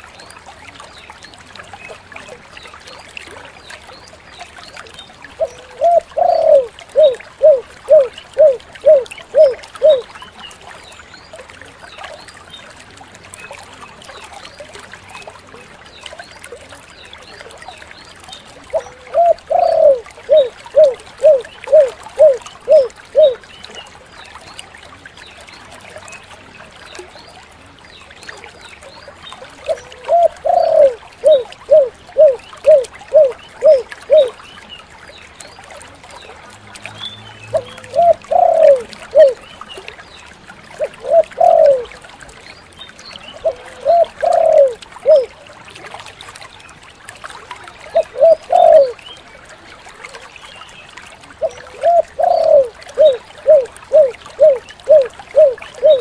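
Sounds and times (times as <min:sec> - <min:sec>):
dove cooing: 0:05.4 - 0:10.1, 0:18.7 - 0:23.4, 0:29.7 - 0:34.3, 0:37.5 - 0:39.4, 0:40.8 - 0:41.9, 0:43.4 - 0:45.3, 0:47.9 - 0:49.0, 0:51.4 - 0:56.0.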